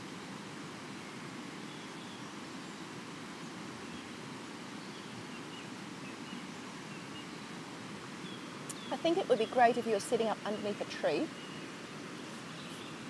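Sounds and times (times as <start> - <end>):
river rushing: 0.0 - 13.0
faint bird chirps: 8.2 - 13.0.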